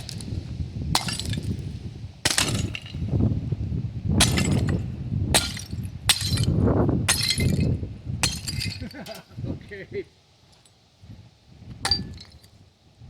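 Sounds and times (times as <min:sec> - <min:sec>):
porcelain pieces clinking and shattering: 0:07.1 - 0:09.2.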